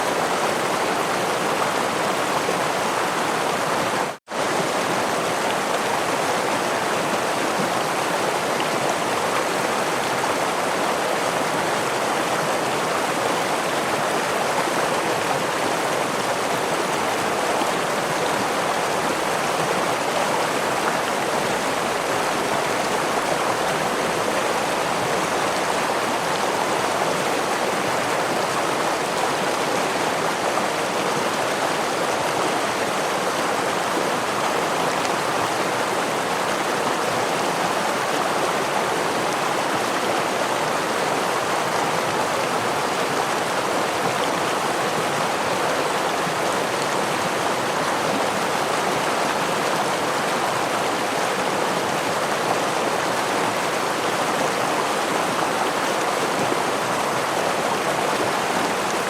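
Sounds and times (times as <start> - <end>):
stream flowing over waterfall: 0.0 - 59.0.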